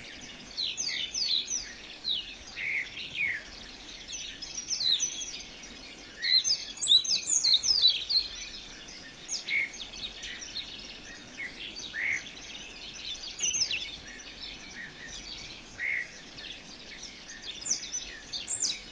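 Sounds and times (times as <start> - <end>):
birds chirping and calling: 0.0 - 18.9
faint background hiss: 0.0 - 18.9.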